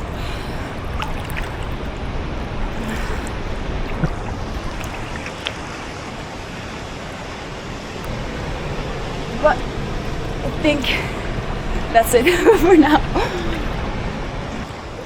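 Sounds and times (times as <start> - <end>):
light water splashes: 0.0 - 7.4.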